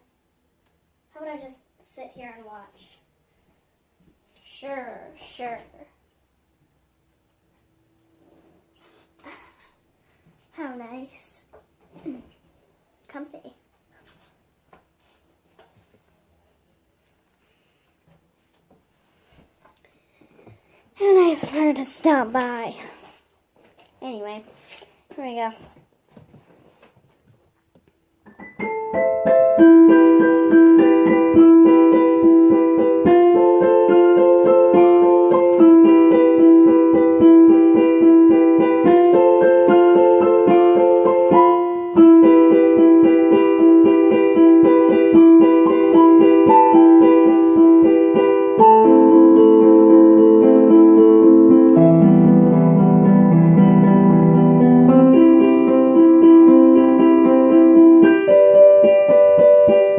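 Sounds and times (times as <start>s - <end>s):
piano playing simple tune: 28.2s - 59.9s.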